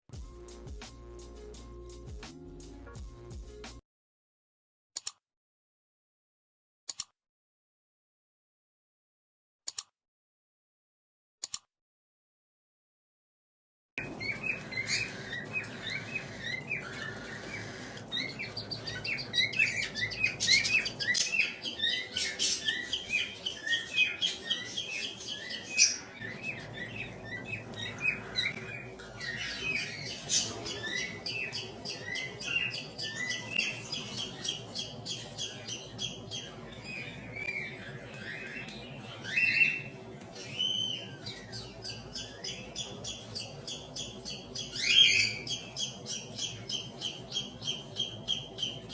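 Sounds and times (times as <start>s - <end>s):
bird calls: 14.0s - 48.9s
chicks begging chirps: 14.0s - 48.9s.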